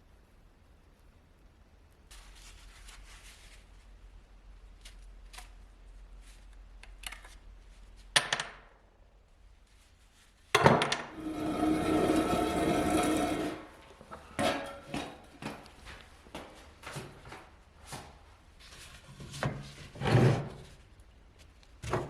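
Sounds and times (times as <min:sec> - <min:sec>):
loud clatter: 0:11.2 - 0:13.8.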